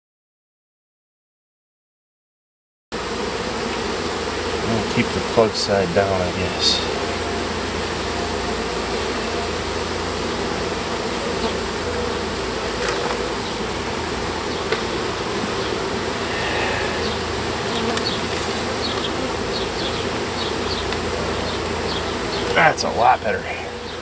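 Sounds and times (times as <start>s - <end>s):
honeybees buzzing: 3.0s - 24.0s
light taps on hive frames: 14.5s - 15.1s, 19.8s - 22.6s.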